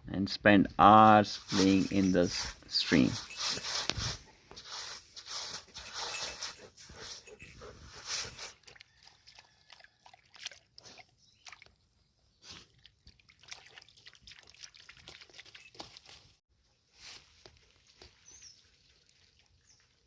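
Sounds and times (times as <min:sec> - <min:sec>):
small water splashes: 0:08.5 - 0:11.8, 0:12.5 - 0:16.2.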